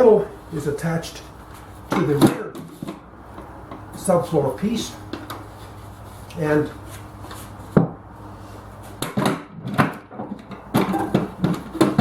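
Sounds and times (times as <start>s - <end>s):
wooden knocks and clunks: 7.7s - 8.0s, 9.0s - 12.0s.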